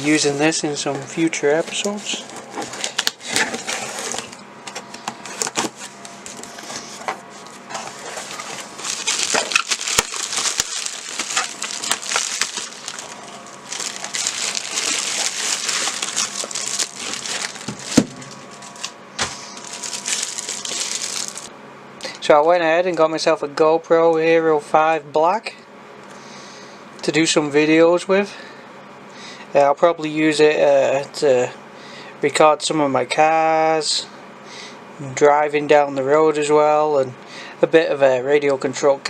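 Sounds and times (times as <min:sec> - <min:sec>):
plastic and cardboard crinkling: 0:01.5 - 0:04.4, 0:07.4 - 0:21.5.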